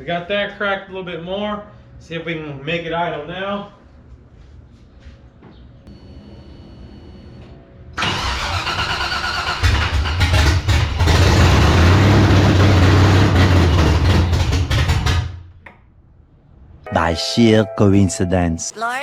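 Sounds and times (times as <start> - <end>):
engine cranking: 8.0 - 15.3.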